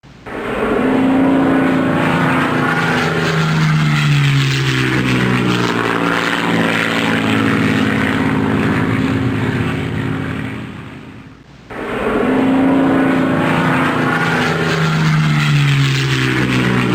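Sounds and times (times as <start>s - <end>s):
airplane engine drone: 0.0s - 16.9s.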